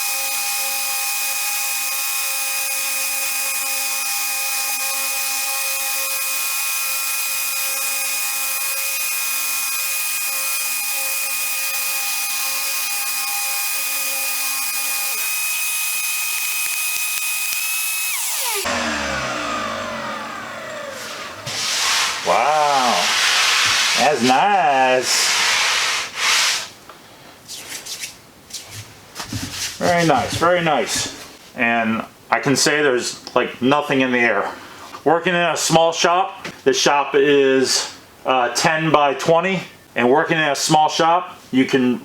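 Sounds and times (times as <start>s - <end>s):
electric sander whining: 0.0s - 24.1s
shop vacuum running: 16.0s - 24.5s.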